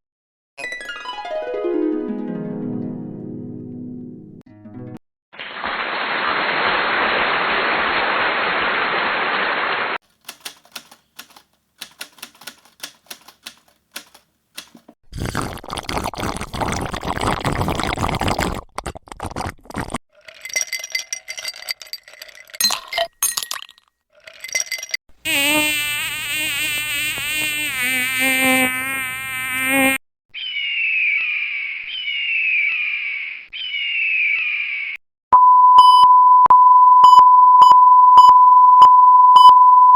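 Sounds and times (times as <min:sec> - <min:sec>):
scattered clicks: 0:10.2 - 0:15.0
buzzing hiss: 0:25.2 - 0:30.0
wobbling buzz: 0:25.2 - 0:30.0
falling chirps: 0:25.3 - 0:35.0.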